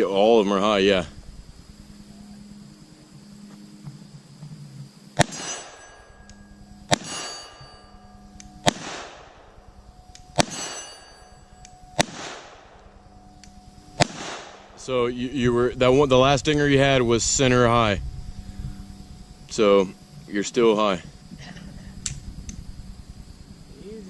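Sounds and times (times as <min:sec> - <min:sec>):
pistol shots: 0:05.2 - 0:06.3, 0:06.9 - 0:09.6, 0:10.3 - 0:11.2, 0:12.0 - 0:12.9, 0:14.0 - 0:14.8
steel target ringing: 0:05.2 - 0:15.9.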